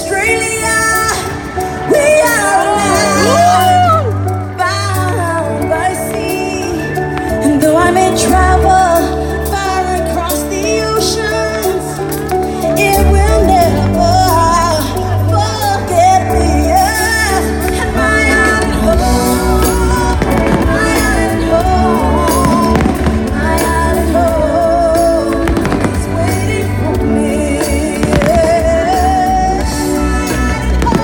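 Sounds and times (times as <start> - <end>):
song with sung melody and bass: 0.0 - 31.0
fireworks bursts: 19.6 - 24.2, 25.3 - 26.6, 27.8 - 29.5.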